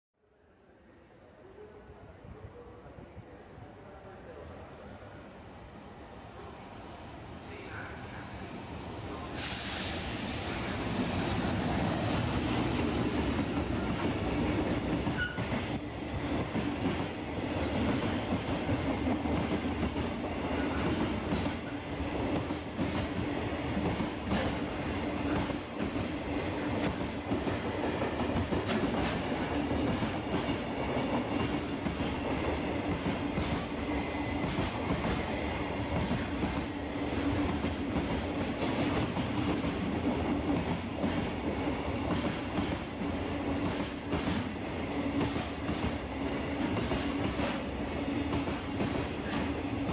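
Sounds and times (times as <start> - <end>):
continuous train hum: 0.3 - 49.9
freight train wheels clacking: 10.6 - 49.9.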